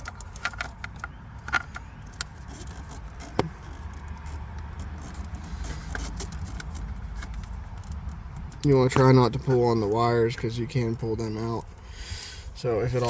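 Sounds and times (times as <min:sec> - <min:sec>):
plastic connectors clicking and rattling: 0:00.0 - 0:09.1.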